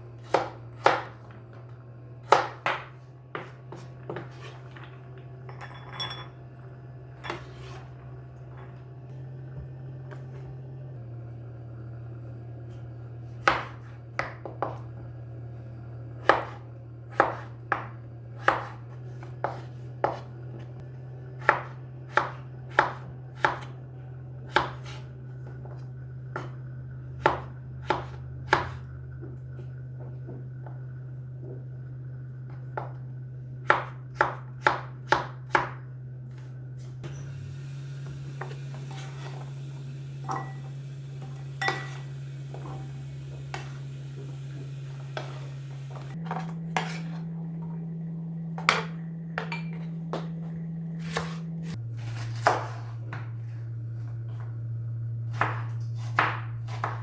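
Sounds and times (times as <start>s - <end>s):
steady low hum: 0.0s - 57.0s
knife chopping food: 0.2s - 1.3s, 2.2s - 4.7s, 13.4s - 14.8s, 16.2s - 20.3s, 21.4s - 23.8s, 24.5s - 25.0s, 27.2s - 28.8s, 33.6s - 35.8s, 51.0s - 51.5s, 52.3s - 53.2s, 55.3s - 57.0s.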